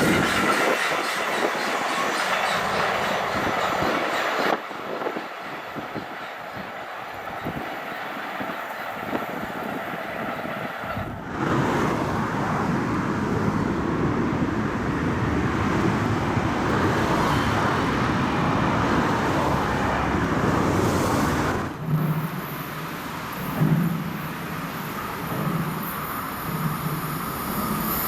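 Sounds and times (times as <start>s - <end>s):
passing vehicle rushing: 11.1s - 23.5s.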